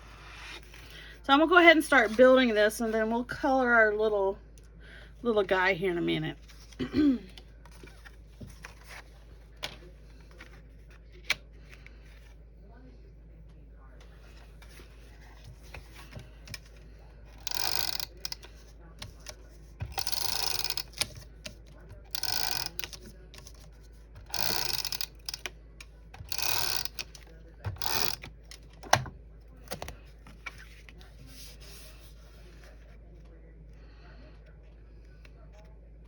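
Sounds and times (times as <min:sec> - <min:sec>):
paper rustling and scraping: 0:29.6 - 0:33.0.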